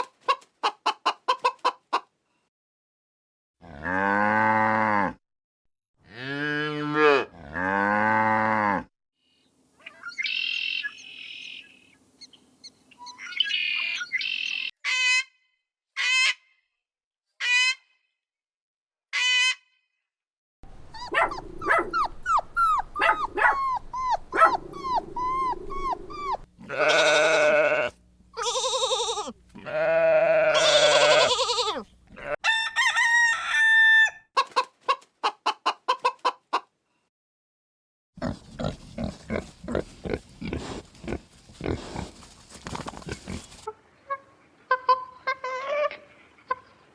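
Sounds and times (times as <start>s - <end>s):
farm animal calls: 13.0s - 14.7s, 20.7s - 32.4s, 38.2s - 46.7s.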